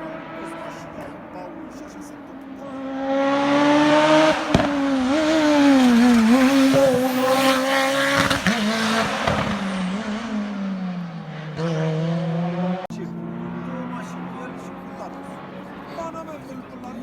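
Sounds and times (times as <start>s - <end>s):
race car engine revving: 0.0s - 17.0s
sharp crack: 4.4s - 4.9s.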